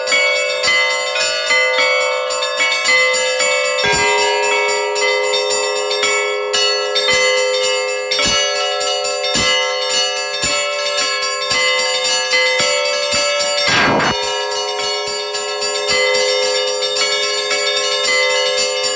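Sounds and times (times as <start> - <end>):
church bells ringing: 0.0 - 18.9
heavy bell stroke: 13.2 - 17.1.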